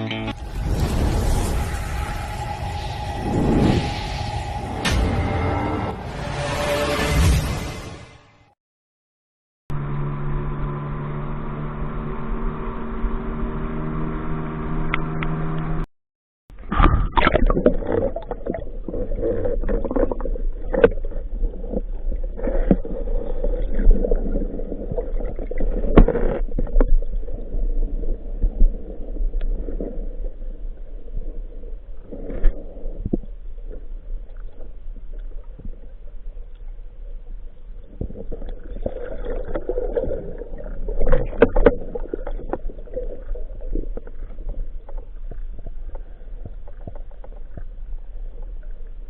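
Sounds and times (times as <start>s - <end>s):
muffled rumbling and gurgling: 16.5s - 49.0s.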